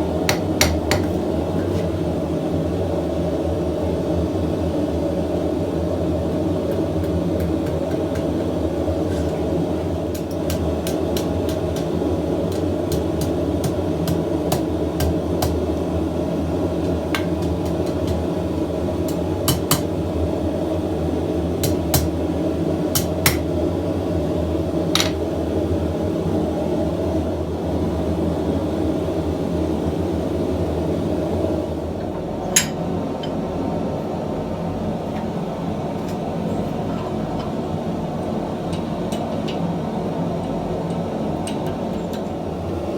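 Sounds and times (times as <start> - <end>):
forge burner rushing: 0.0 - 26.2.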